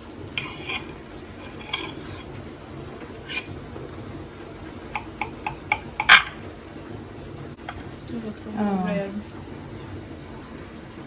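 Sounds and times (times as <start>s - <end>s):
utensils clinking on baking dish: 0.4s - 2.4s, 3.2s - 3.6s, 4.8s - 6.4s.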